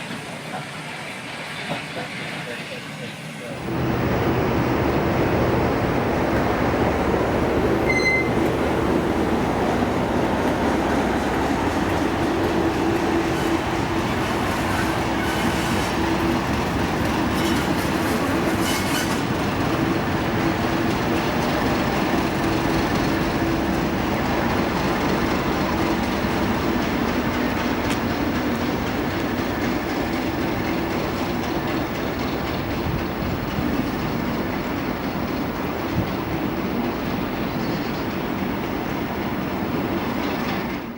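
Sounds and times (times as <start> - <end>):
train wheels rumbling on track: 0.0 - 40.9
low diesel engine tone: 3.6 - 15.1.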